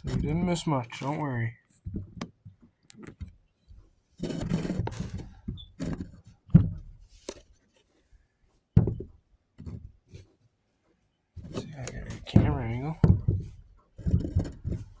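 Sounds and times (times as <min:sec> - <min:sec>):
rustling scrape: 0:04.2 - 0:06.1
knocks and thuds: 0:06.5 - 0:06.9, 0:08.8 - 0:09.8, 0:12.0 - 0:15.0.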